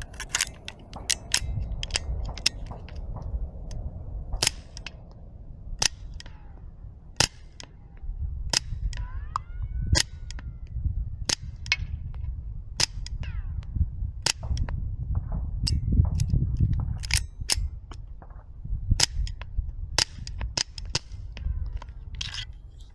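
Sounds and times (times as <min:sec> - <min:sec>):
steady low rumble: 0:00.0 - 0:22.9
suppressed pistol shots: 0:04.4 - 0:05.0.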